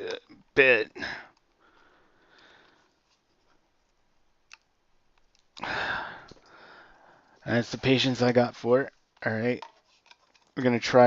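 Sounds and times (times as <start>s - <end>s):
faint rustling: 1.6s - 4.2s.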